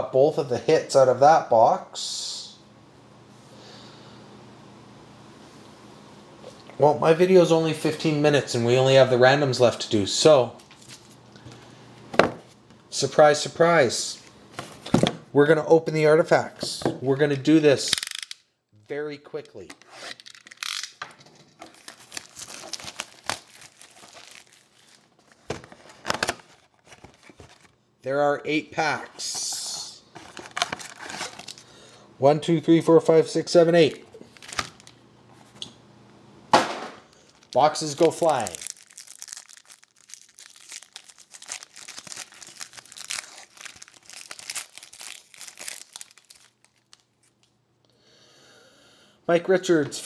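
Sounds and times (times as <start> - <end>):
plastic wrapping crinkling and tearing: 21.7 - 27.8, 30.2 - 31.7, 34.2 - 35.0, 37.1 - 47.5.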